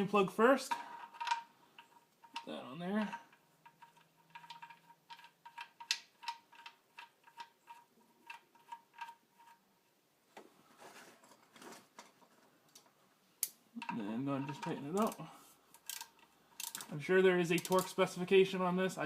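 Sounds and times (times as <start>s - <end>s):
soft metal scrapes: 10.6s - 11.9s
ratchet clicking: 14.4s - 16.9s, 17.6s - 17.9s.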